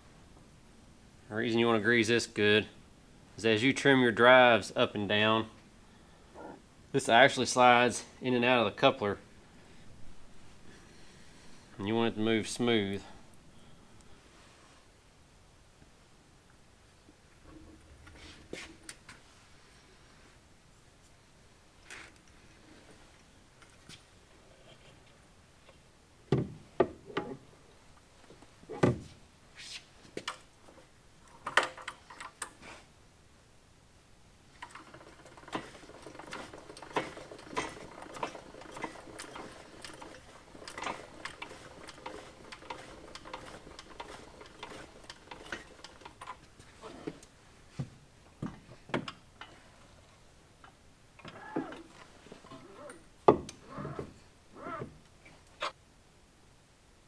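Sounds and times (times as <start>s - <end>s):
fast irregular clicking and rattling: 34.5s - 46.5s.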